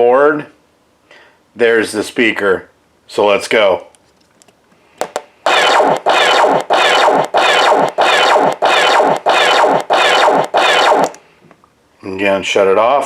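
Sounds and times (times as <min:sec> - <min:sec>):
toy blaster shots through speaker: 0:05.5 - 0:11.2.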